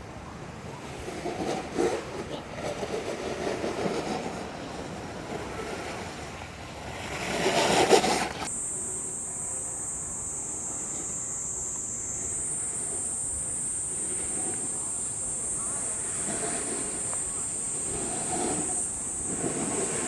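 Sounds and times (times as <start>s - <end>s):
steady high hiss: 0.0s - 20.0s
snowboard sliding on snow: 0.3s - 8.5s, 12.6s - 20.0s.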